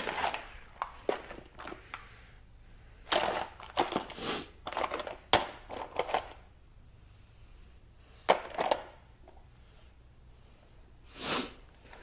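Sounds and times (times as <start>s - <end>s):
metal tools clinking: 0.0s - 1.8s, 3.1s - 6.4s.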